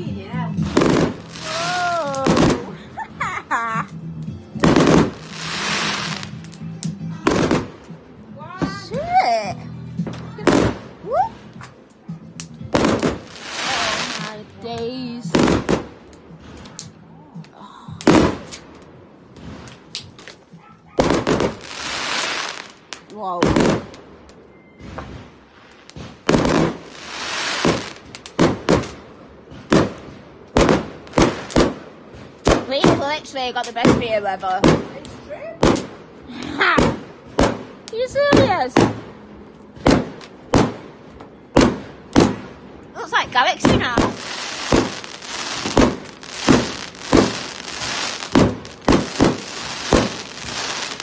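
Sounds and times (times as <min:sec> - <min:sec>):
firework bangs: 0:00.5 - 0:03.5, 0:04.6 - 0:17.0, 0:18.0 - 0:51.0
firework hiss: 0:00.6 - 0:02.8, 0:04.6 - 0:06.6, 0:12.8 - 0:16.9, 0:21.0 - 0:23.0, 0:25.0 - 0:29.0, 0:43.3 - 0:51.0.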